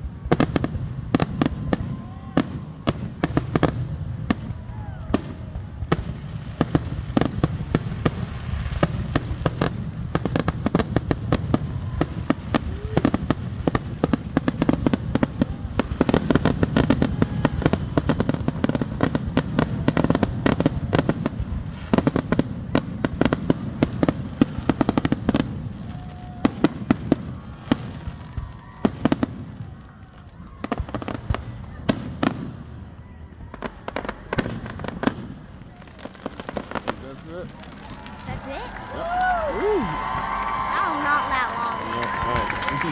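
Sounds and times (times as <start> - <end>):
fireworks bangs and crackles: 0.0 - 42.9.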